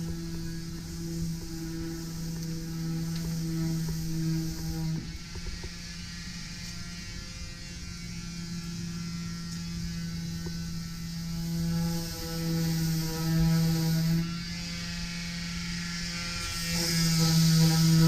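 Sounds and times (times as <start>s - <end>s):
power tool motor hum with hiss: 0.0s - 18.0s.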